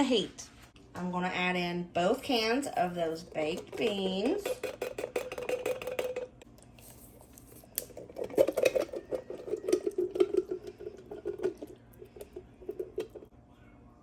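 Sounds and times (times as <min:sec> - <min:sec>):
metal spoon scraping can and pan: 0:02.7 - 0:11.6.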